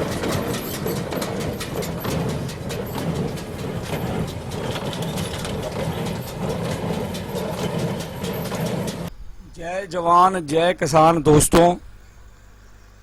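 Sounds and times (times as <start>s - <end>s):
baler mechanical clatter: 0.0s - 9.1s
tractor engine running: 0.0s - 11.7s.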